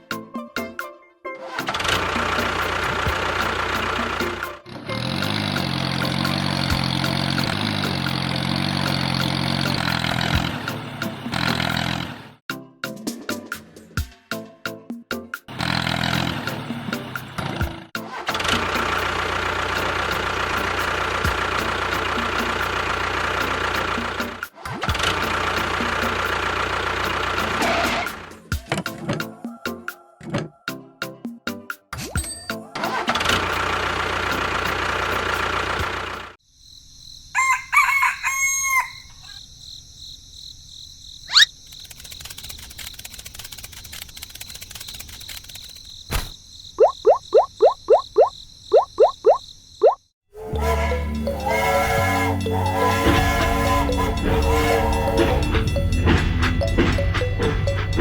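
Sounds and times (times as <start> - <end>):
engine idling: 1.8 - 12.4, 15.5 - 28.4, 33.0 - 36.4
rooster crowing: 37.3 - 39.4.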